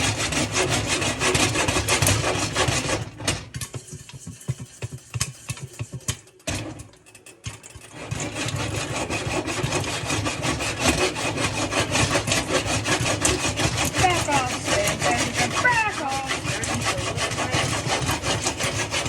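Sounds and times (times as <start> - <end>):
popcorn popping and sizzling: 2.9 - 8.0.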